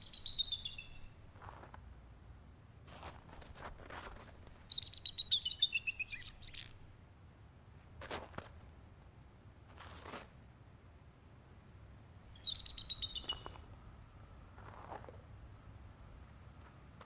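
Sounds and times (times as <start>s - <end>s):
bird chirping: 0.0s - 1.2s, 4.6s - 6.9s, 10.7s - 14.2s
faint outdoor background noise: 0.0s - 17.0s.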